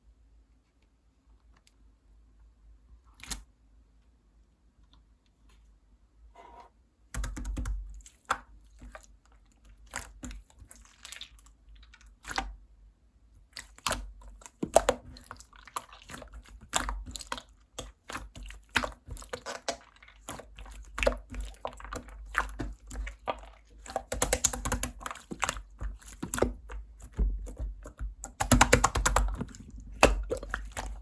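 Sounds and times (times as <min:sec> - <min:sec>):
slime squished by hand: 0:13.4 - 0:31.0.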